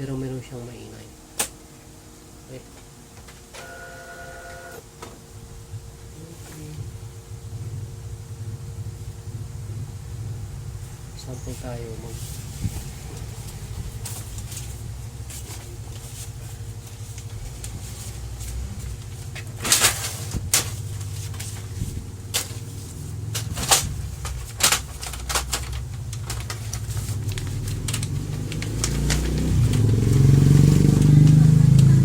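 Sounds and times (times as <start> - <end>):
laser printer humming: 0.0 - 8.9.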